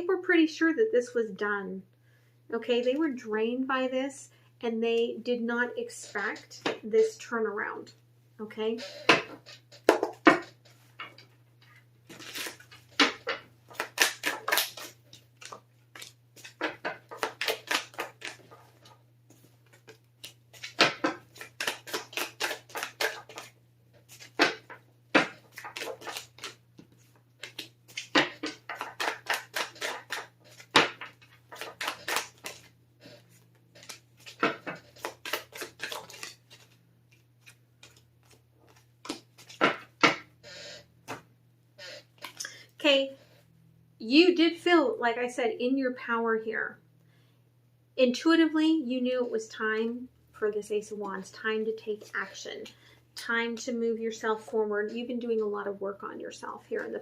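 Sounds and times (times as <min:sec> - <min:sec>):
cards being shuffled: 0:08.8 - 0:40.3, 0:42.2 - 0:42.5.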